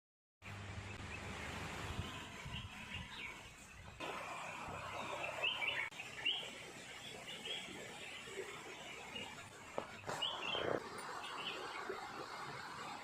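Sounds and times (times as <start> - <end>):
small waterfall rushing: 0.6 - 13.0
small birds chirping: 4.9 - 12.0.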